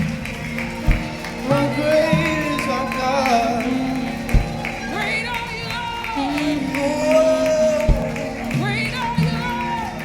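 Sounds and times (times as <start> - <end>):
band playing worship music: 0.0 - 10.0
voices singing: 0.0 - 10.0
low drum beat: 0.8 - 2.8, 4.2 - 5.0, 7.8 - 8.7.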